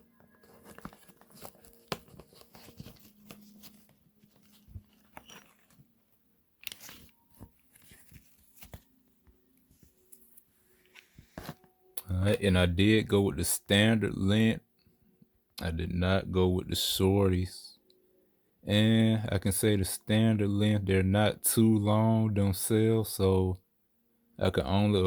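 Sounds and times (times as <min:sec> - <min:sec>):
packaging rustling: 0:00.1 - 0:06.0, 0:06.6 - 0:11.7.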